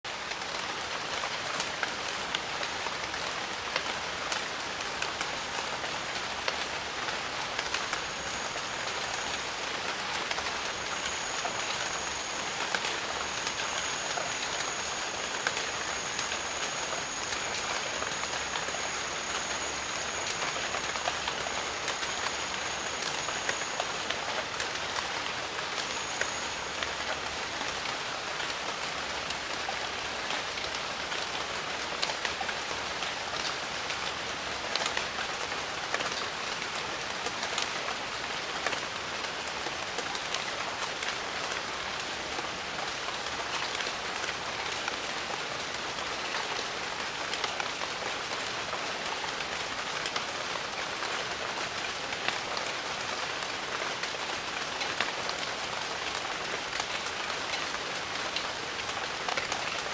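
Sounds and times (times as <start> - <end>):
rain on foliage: 0.1 - 59.9
thin high steady tone: 2.8 - 29.0.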